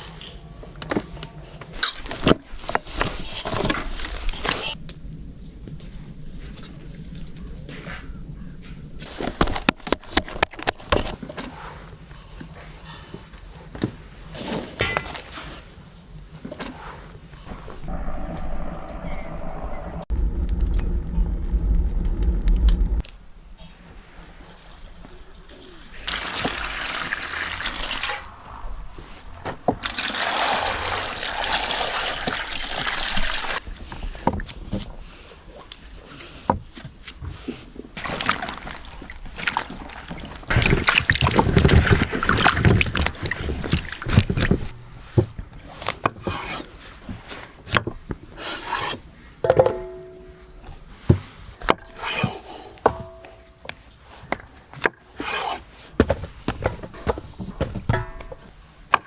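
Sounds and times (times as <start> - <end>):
liquid pouring: 26.0 - 28.5, 29.8 - 33.6, 38.0 - 45.2.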